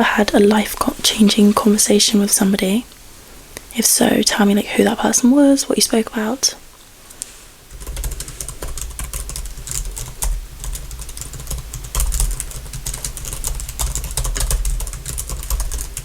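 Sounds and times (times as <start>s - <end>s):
fast typing on keyboard: 7.7s - 16.0s.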